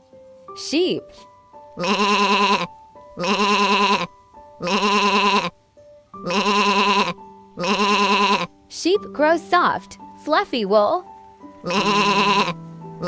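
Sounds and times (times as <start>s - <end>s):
soft background music: 0.0s - 13.0s
sheep bleating: 1.8s - 5.6s, 6.2s - 8.5s, 11.6s - 12.6s.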